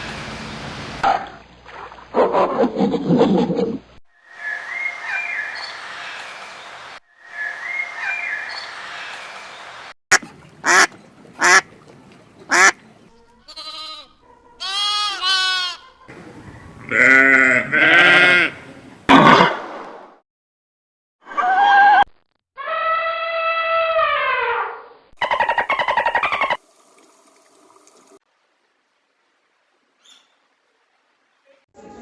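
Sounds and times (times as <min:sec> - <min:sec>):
longer pitched animal calls: 0:22.6 - 0:26.6.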